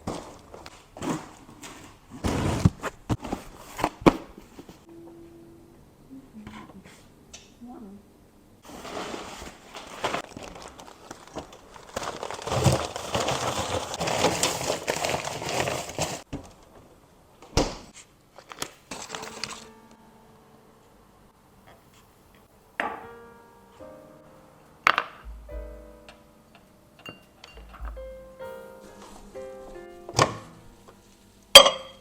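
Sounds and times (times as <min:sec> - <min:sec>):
packaging crumpling: 0:08.7 - 0:16.3, 0:18.4 - 0:19.7.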